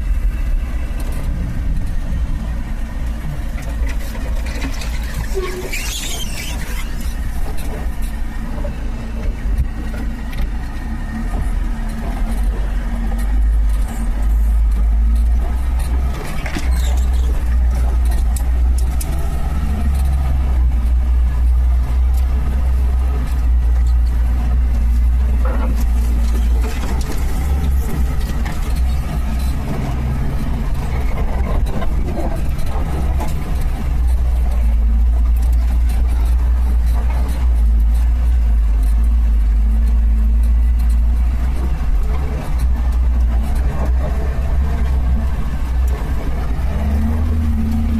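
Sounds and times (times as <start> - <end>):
vehicle engine rumbling: 0.0 - 47.9.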